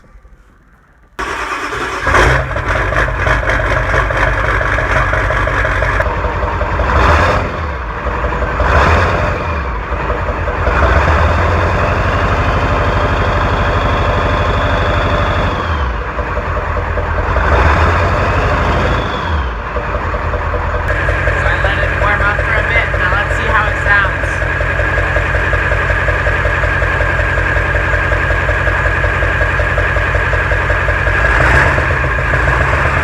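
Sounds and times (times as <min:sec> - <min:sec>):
diesel engine revving: 0:01.2 - 0:33.0.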